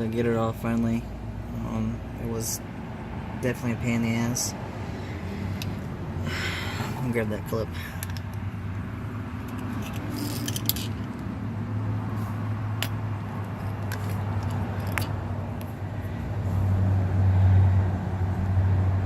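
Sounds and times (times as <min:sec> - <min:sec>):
metallic clicks of small parts: 0:08.0 - 0:08.4, 0:09.4 - 0:11.2.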